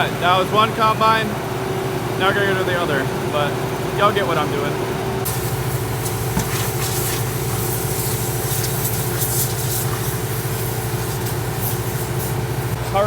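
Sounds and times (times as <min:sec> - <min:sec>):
engine idling: 0:00.0 - 0:13.0
rushing air hiss: 0:05.3 - 0:12.8.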